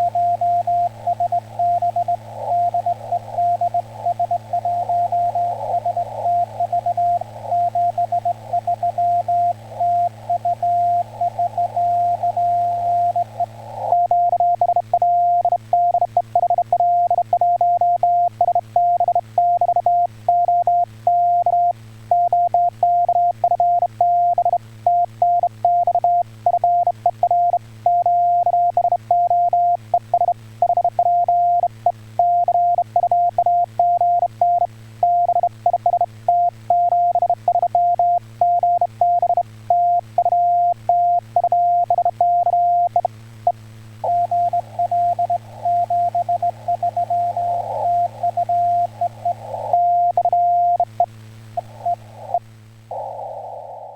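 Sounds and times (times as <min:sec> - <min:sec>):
hissy radio band noise: 0:00.0 - 0:53.9
morse code tone: 0:44.1 - 0:50.9.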